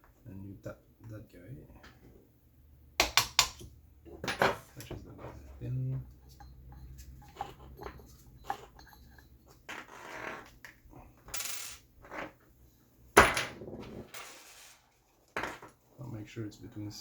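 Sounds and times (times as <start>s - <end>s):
hand tools clicking and tapping: 3.0s - 3.7s, 6.1s - 9.6s.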